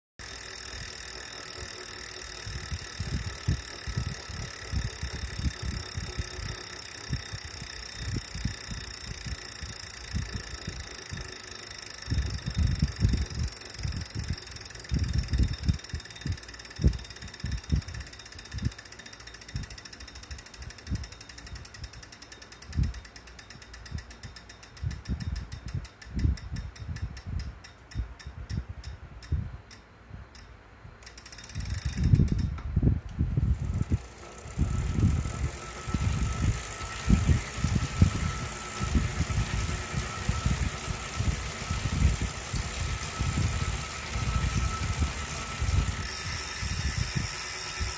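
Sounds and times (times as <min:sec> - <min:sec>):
freewheel ticking: 0:00.2 - 0:47.9
steady whine: 0:33.2 - 0:47.9.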